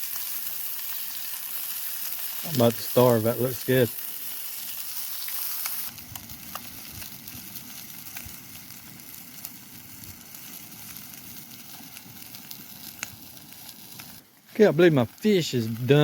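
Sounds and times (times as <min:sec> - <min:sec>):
fish sizzling in a pan: 0:00.0 - 0:16.0
small pops of frying oil: 0:05.2 - 0:14.2.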